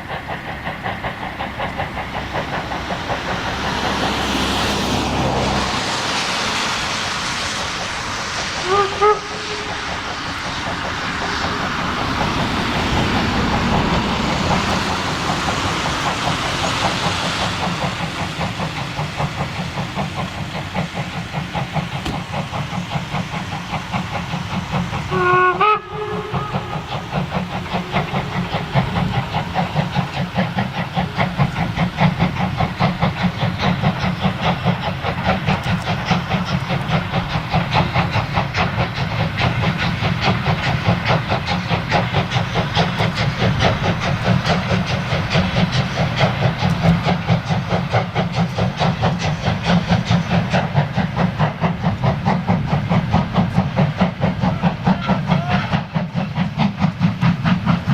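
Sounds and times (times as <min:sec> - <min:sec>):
steam hiss: 0:00.0 - 0:57.9
steam locomotive exhaust chuffs: 0:00.0 - 0:57.9
steam whistle blast: 0:08.6 - 0:09.9, 0:25.1 - 0:27.0.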